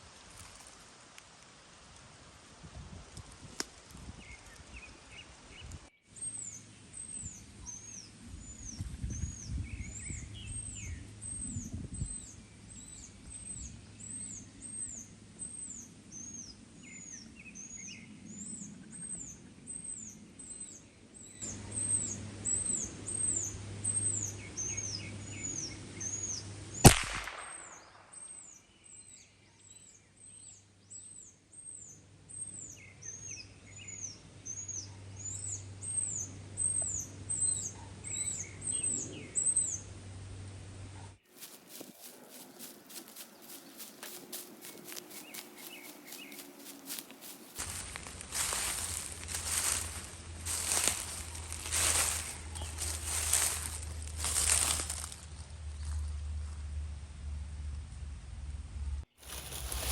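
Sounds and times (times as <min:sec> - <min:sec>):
birds chirping: 0:04.1 - 0:26.9, 0:27.5 - 0:40.0, 0:41.0 - 0:56.1, 0:59.2 - 0:59.9
rifle shot: 0:26.8 - 0:28.3.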